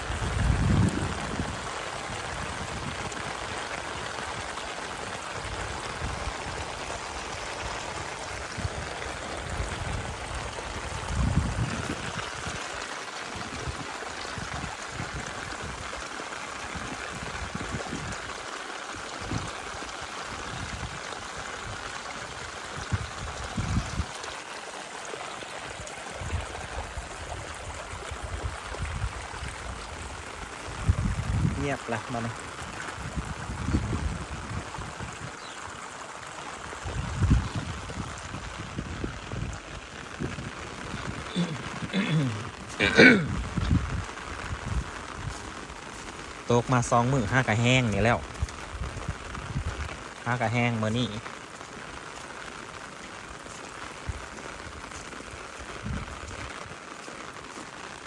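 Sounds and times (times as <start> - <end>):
water flowing in a canal: 0.0 - 58.0.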